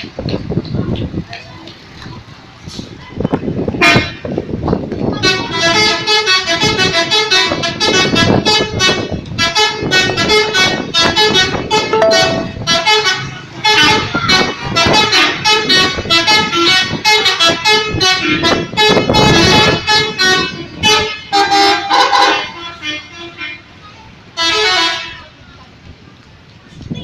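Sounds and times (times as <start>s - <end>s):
bus horn playing a tune: 3.8s - 4.2s, 5.2s - 23.7s, 24.4s - 25.2s.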